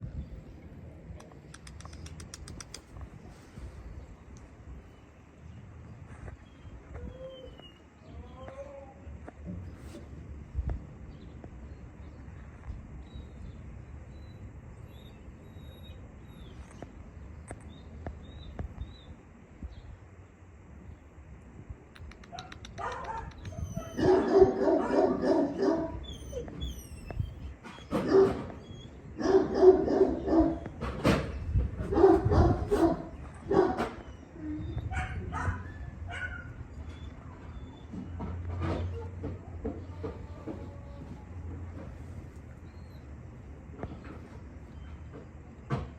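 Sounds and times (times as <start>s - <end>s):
steady low rumble: 0.0s - 45.6s
sharp clicks: 1.1s - 3.2s, 21.9s - 23.6s
puppies barking: 22.4s - 26.9s, 27.8s - 30.8s, 31.8s - 34.2s, 34.8s - 40.0s
puppies yelping: 22.8s - 30.8s.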